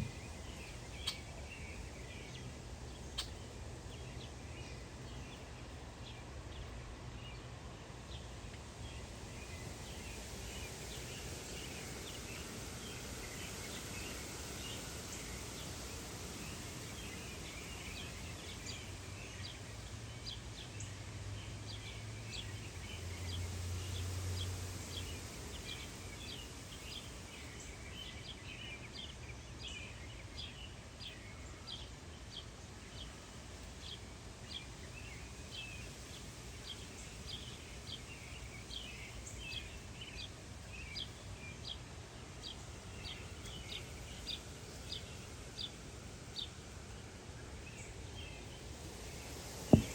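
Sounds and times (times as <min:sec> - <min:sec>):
outdoor background noise: 0:00.0 - 0:49.9
songbirds chirping: 0:00.0 - 0:49.9.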